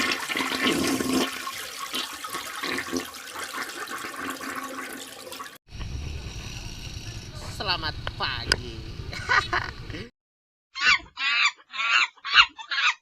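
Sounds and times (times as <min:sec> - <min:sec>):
low rumble: 0:05.7 - 0:10.1.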